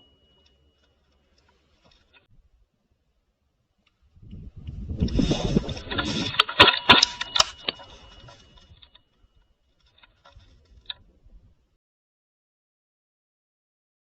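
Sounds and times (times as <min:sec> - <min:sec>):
low rumbling: 0:03.9 - 0:08.8.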